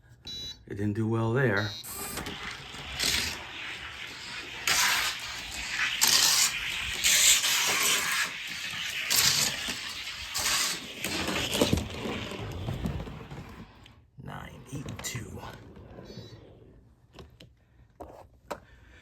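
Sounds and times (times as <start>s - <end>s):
toy car rolling down a track: 1.8s - 13.7s.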